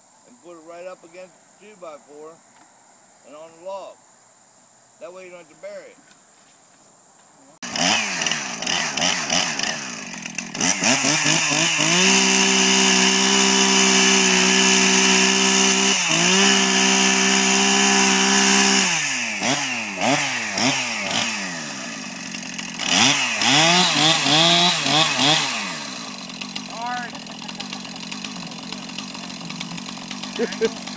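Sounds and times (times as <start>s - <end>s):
chainsaw revving and cutting wood: 7.6s - 30.9s.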